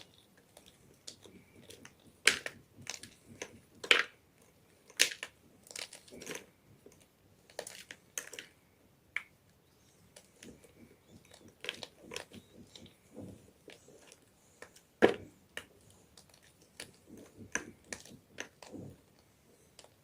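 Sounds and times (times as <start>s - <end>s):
soft gritty crackles: 0.0s - 8.7s, 9.5s - 20.0s
chalk crunching and cracking: 10.1s - 20.0s.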